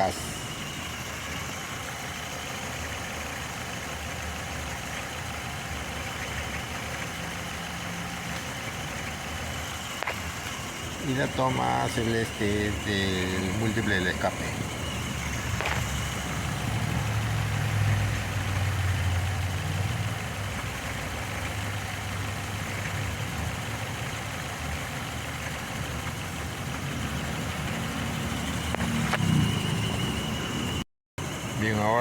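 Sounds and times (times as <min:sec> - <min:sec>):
car engine idling: 0:00.0 - 0:32.0.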